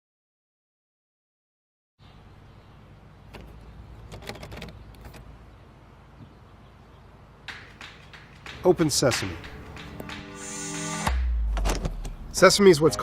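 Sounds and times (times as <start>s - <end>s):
faint clicks and knocks: 7.5s - 10.3s.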